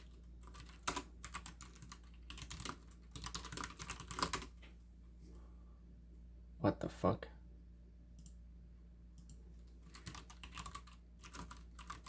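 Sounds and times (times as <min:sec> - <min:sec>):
typing on computer keyboard: 0:00.0 - 0:04.6, 0:09.2 - 0:12.0.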